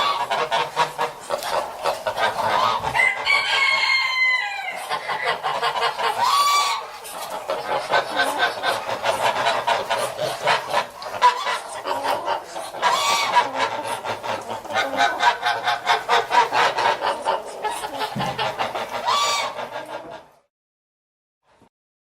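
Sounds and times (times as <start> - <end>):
geese honking and gabbling: 0.0 - 20.5.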